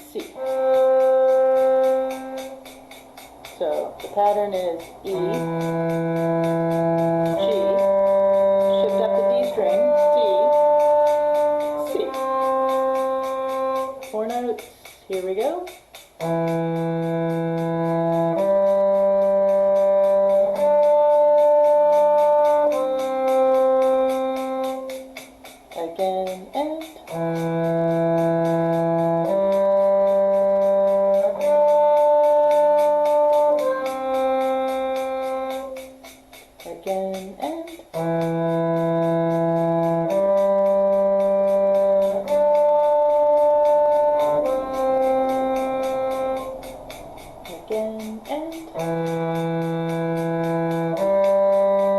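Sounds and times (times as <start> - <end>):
bowed string long held notes: 0.0 - 51.9
steady ticking: 0.0 - 51.9.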